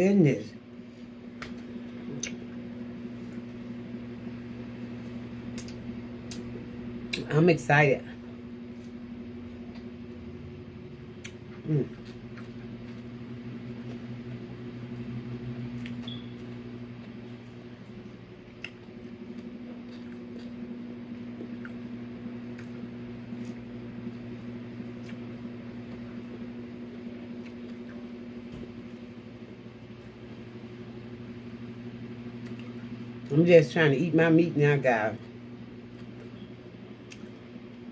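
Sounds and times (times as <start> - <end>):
low electrical hum: 0.0 - 37.9
person chewing: 11.2 - 14.1, 18.5 - 24.2, 24.9 - 26.1, 27.3 - 28.1, 32.4 - 32.8, 37.0 - 37.4.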